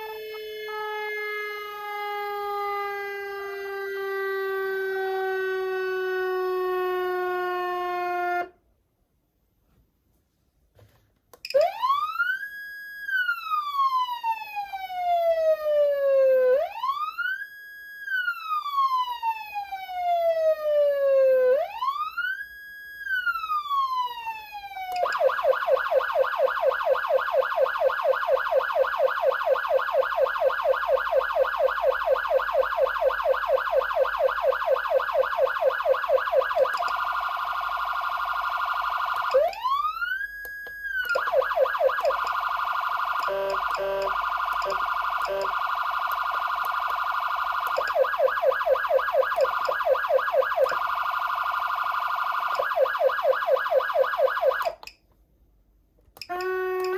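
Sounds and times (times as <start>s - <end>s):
electronic siren wailing and warbling: 24.8s - 54.9s, 56.2s - 56.9s.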